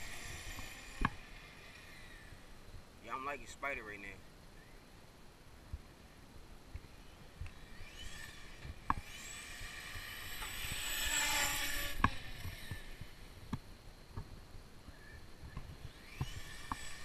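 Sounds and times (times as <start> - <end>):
rc truck electric motor whining: 0.0 - 2.6, 7.2 - 13.5, 15.6 - 17.0.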